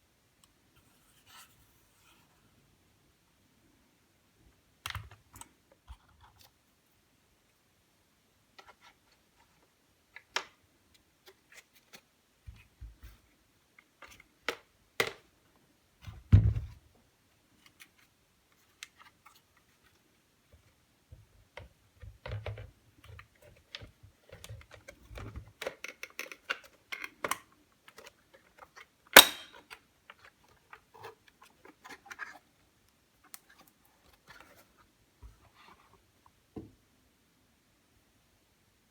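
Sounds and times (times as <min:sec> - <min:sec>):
small hard parts clicking and tapping: 0:21.6 - 0:32.3.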